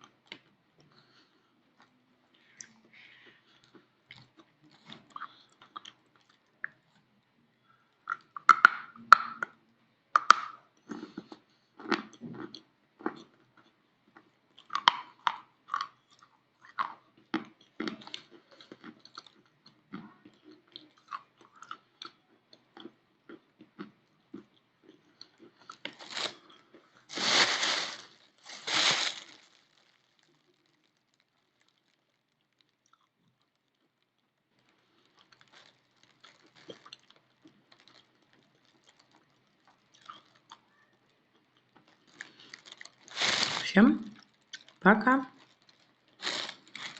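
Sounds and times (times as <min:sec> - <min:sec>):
chalk being bitten and chewed: 0:45.4 - 0:46.9.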